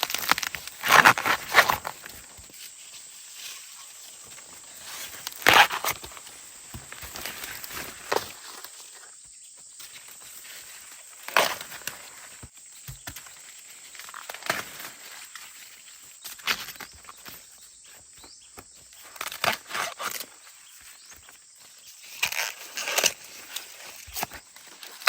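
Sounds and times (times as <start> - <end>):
sharp crackles: 0.0 - 2.6, 4.3 - 8.7
footsteps: 0.0 - 15.2
corn plants rustling: 0.0 - 25.0.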